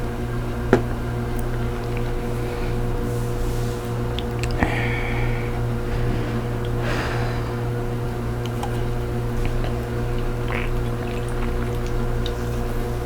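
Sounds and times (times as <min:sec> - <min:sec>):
steady low hum: 0:00.0 - 0:13.0
person gulping: 0:04.2 - 0:12.4.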